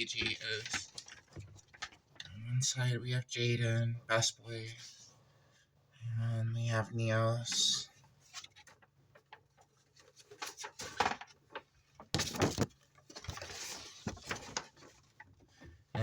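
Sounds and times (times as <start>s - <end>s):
paper packaging rustling: 0.1s - 2.2s, 8.2s - 15.8s.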